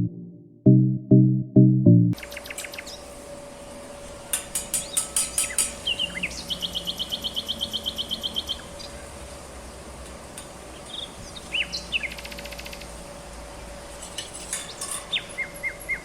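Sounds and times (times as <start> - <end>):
songbird singing: 5.4 - 9.0.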